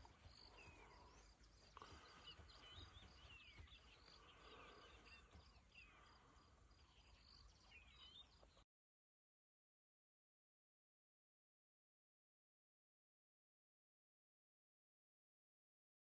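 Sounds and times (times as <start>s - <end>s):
birds chirping: 0.0s - 8.6s.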